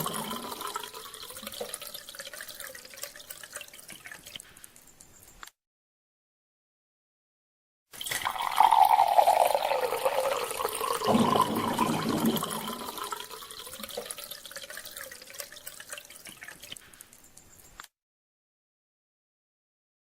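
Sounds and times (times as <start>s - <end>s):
water pouring into a glass: 0.0s - 4.3s, 8.0s - 16.8s.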